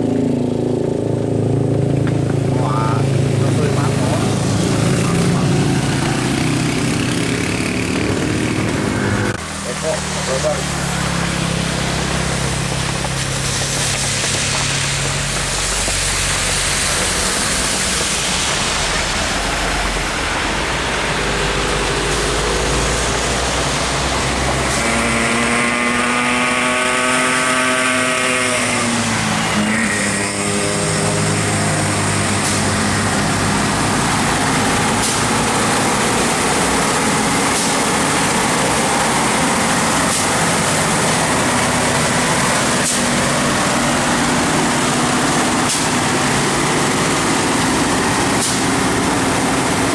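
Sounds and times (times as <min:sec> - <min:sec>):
heavy diesel truck engine climbing: 0:00.0 - 0:49.9.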